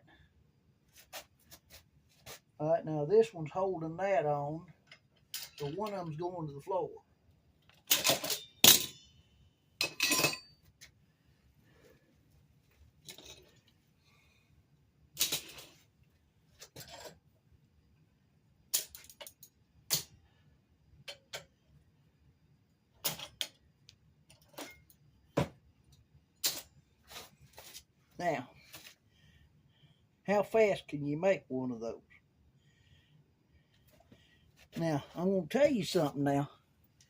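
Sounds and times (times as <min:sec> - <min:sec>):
metallic clicks and clanks: 0:07.7 - 0:09.1.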